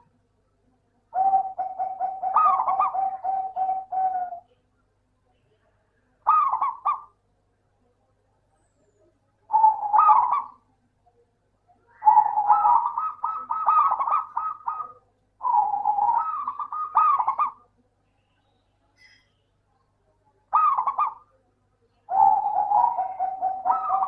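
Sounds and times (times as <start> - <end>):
dove cooing: 1.1 - 4.5, 6.2 - 7.2, 9.5 - 10.6, 11.9 - 17.7, 20.5 - 21.3, 22.1 - 24.0.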